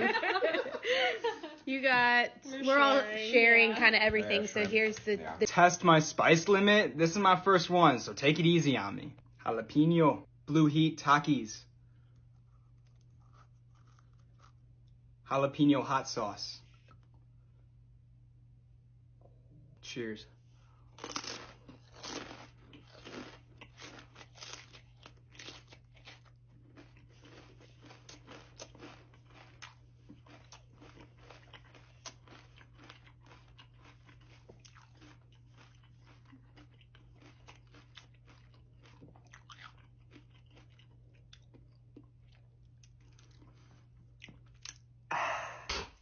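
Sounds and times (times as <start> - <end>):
faint low hum: 0.0 - 46.0
crunching and chewing chips: 11.8 - 15.1, 20.8 - 45.0.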